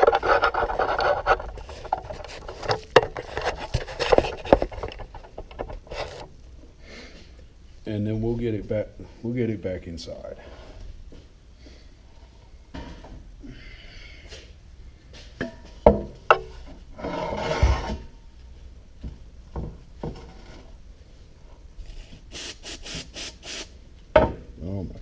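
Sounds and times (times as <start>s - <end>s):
rubbing and scraping metal parts: 0.0s - 6.4s, 16.3s - 18.1s.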